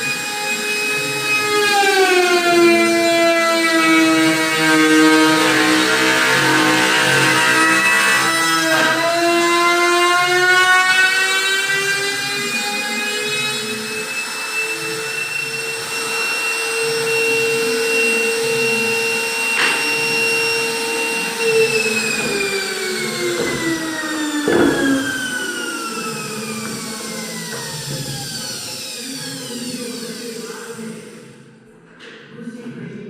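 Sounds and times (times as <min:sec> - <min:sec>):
power tool cutting wood: 0:00.0 - 0:31.4
sharp knocks: 0:24.4 - 0:25.2.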